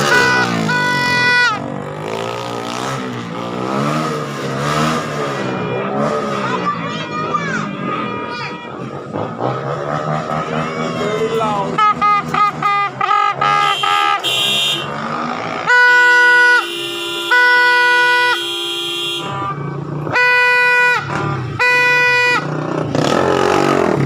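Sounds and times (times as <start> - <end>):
vehicle horn honking: 0.0 - 2.3, 5.4 - 6.4, 7.2 - 9.0, 11.6 - 23.1
lower horn held steady: 0.0 - 2.4, 11.6 - 22.8.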